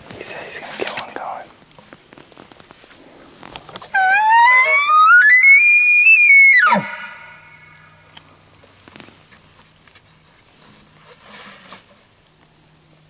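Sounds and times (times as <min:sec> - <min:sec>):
elk call whistle and grunt: 0:03.9 - 0:08.0.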